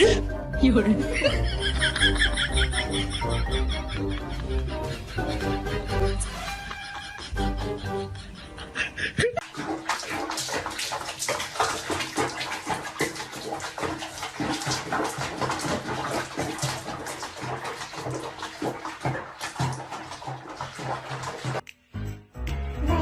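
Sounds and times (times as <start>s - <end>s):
water splashing: 9.4s - 21.6s.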